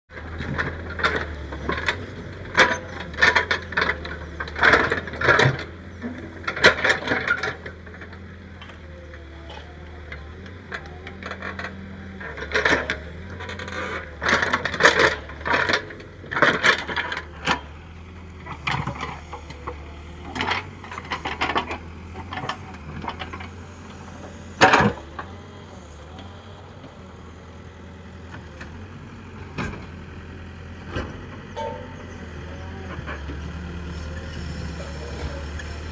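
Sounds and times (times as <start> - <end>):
diesel engine humming: 0.1 - 35.9
sharp metal clanks and knocks: 31.5 - 32.1.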